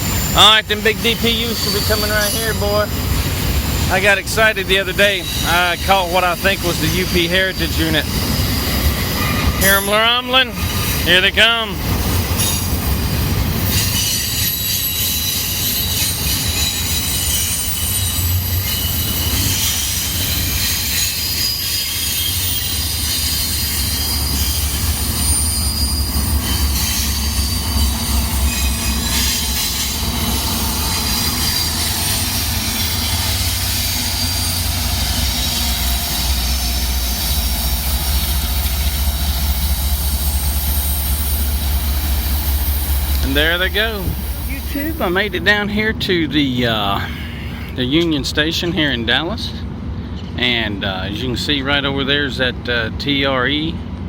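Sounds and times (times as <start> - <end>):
diesel locomotive rumble: 0.0 - 54.0
steel wheels squealing on rails: 0.0 - 54.0.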